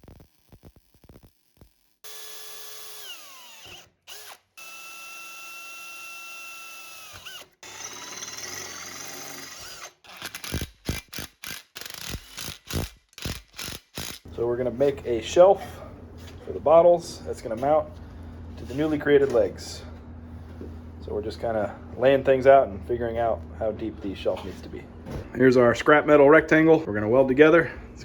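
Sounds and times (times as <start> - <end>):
power tool motor running: 2.0 - 14.3.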